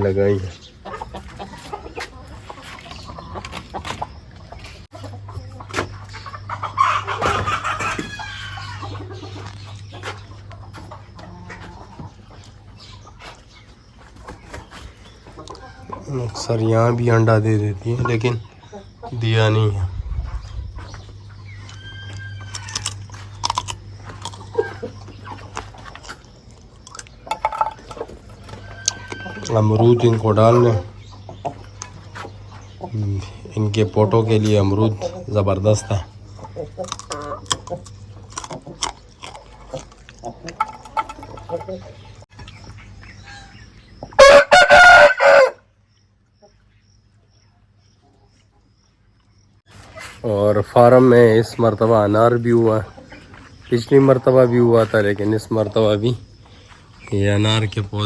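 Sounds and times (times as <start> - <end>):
hens clucking: 0.0 - 45.6, 49.7 - 58.0
steady low hum: 2.2 - 44.2
rooster crowing: 6.8 - 9.1, 21.4 - 23.0, 28.4 - 30.0, 44.2 - 45.7.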